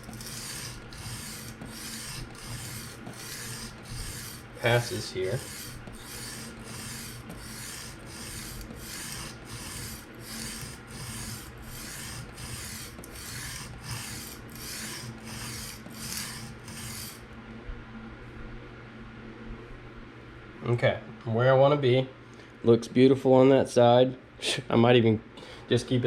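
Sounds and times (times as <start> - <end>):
knife rasping on sharpening stone: 0.0 - 17.2.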